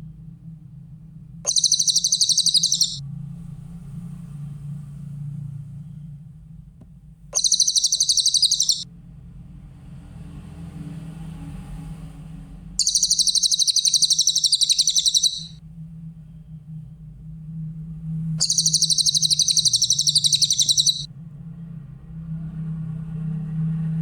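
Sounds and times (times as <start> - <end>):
steady low hum: 0.0 - 9.4, 12.8 - 23.0
bird fast high trill: 1.5 - 3.0, 7.4 - 8.8, 12.8 - 15.6, 18.4 - 21.1.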